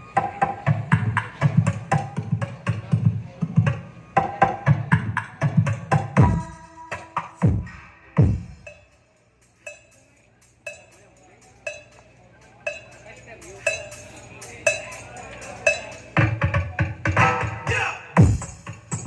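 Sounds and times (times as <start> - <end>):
dance music with heavy bass: 0.4 - 8.8, 16.1 - 19.0.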